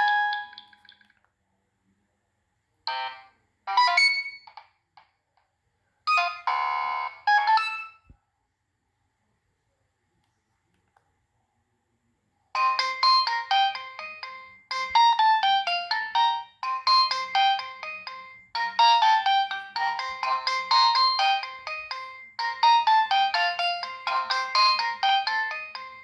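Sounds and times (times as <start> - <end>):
phone ringtone melody: 0.0 - 1.0, 2.9 - 4.5, 6.1 - 8.1, 12.6 - 26.0.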